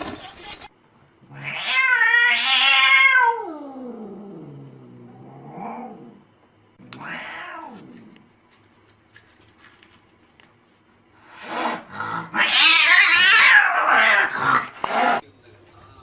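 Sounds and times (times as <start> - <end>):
cat meowing: 1.3 - 3.5, 6.9 - 7.9, 12.4 - 14.3
cat yowling: 1.3 - 3.9, 6.9 - 7.8, 12.2 - 14.7.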